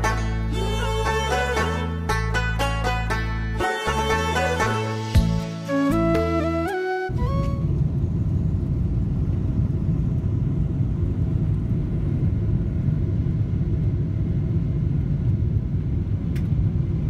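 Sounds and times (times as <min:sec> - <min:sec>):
vehicle rumbling: 0:06.0 - 0:17.0.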